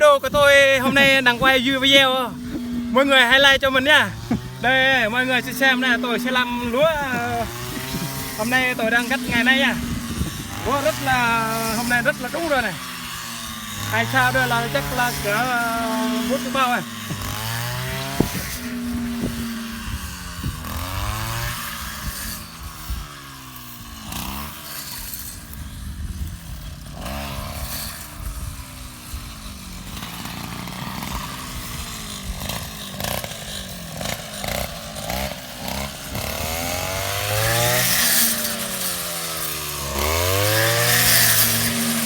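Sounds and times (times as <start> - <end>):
harvester engine running: 0.0 - 21.6, 34.0 - 42.0.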